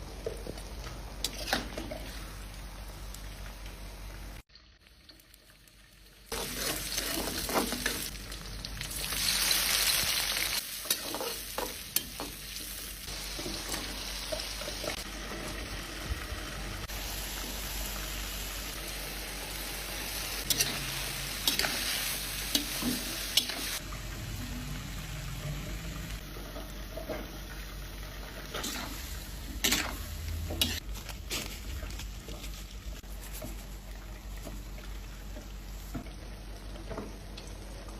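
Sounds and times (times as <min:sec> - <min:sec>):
food sizzling in hot oil: 0:01.3 - 0:30.8
spatula scraping a pan: 0:06.3 - 0:07.9.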